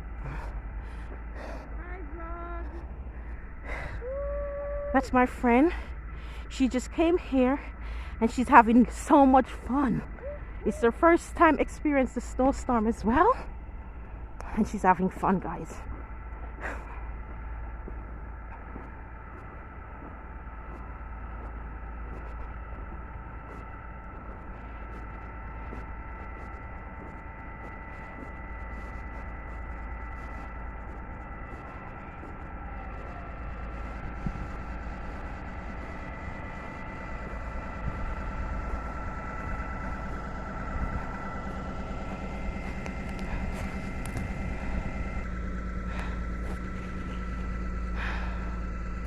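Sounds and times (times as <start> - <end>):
steady high whine: 0.0 - 49.0
wind rumbling on microphone: 15.7 - 49.0.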